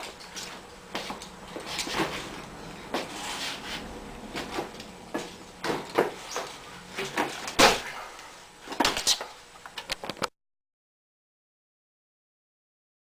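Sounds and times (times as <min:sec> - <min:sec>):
bmx bike knocks and clattering: 0:07.0 - 0:08.0.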